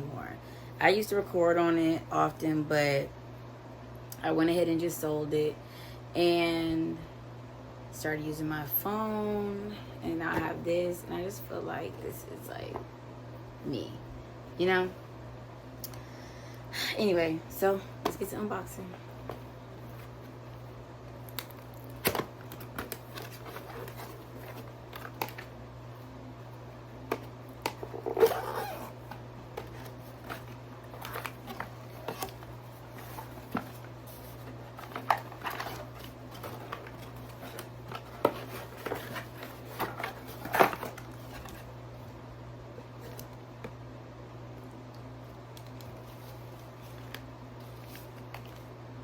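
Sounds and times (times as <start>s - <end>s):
steady low hum: 0.0s - 49.0s
packaging clicks and rustles: 21.2s - 25.5s, 27.1s - 41.7s.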